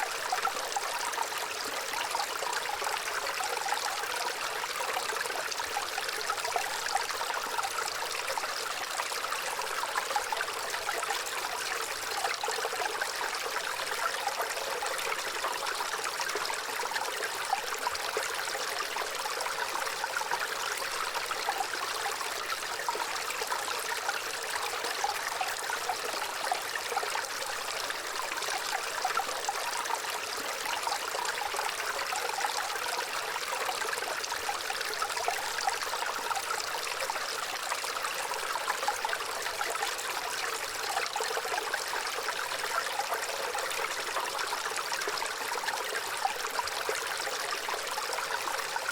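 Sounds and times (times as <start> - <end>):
water trickling and babbling: 0.0 - 48.9.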